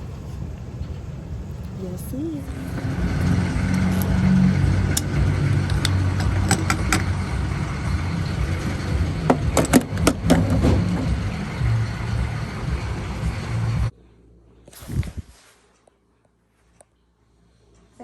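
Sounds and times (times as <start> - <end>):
car engine rumbling: 0.0 - 14.0
quick run of knocks: 8.4 - 12.3.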